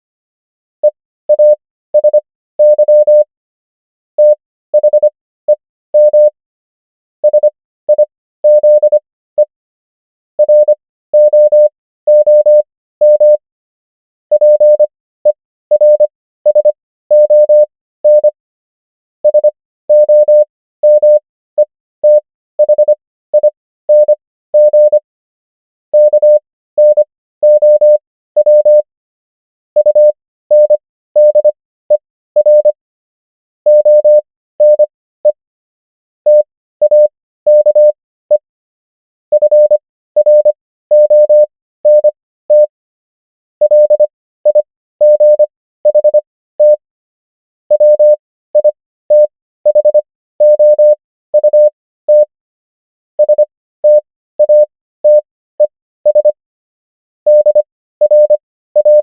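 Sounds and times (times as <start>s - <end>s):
morse code beeps: 0.8s - 3.3s, 4.2s - 6.4s, 7.2s - 9.5s, 10.4s - 13.4s, 14.3s - 14.9s, 15.7s - 18.4s, 19.2s - 21.2s, 22.0s - 25.0s, 26.0s - 28.9s, 29.8s - 31.6s, 32.4s - 32.8s, 33.7s - 35.4s, 36.3s - 38.4s, 39.3s - 42.7s, 43.6s - 46.8s, 47.7s - 52.3s, 53.2s - 56.4s, 57.3s - 59.0s.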